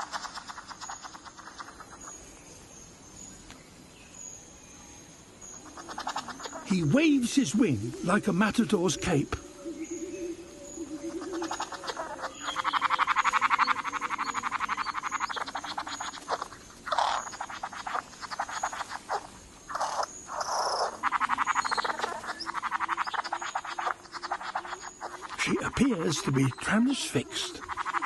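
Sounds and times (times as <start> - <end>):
bird rattling rasping call: 0.0 - 2.0, 5.6 - 7.6, 11.1 - 28.0.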